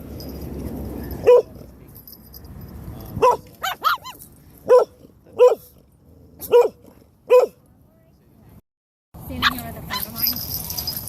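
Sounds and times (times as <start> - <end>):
puppy barking: 1.2 - 1.5, 3.2 - 5.7, 6.4 - 7.6.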